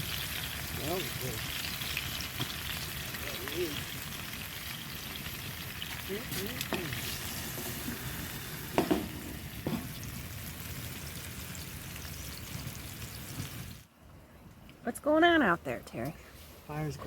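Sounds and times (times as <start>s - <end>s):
chicken sizzling in oil: 0.0s - 13.8s
sharp knocks: 8.8s - 9.9s.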